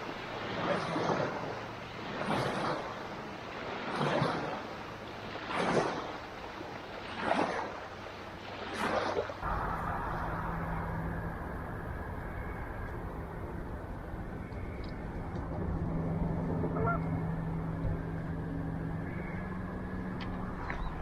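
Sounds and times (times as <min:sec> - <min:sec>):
river water swishing: 0:00.0 - 0:21.0
low hum: 0:09.4 - 0:21.0.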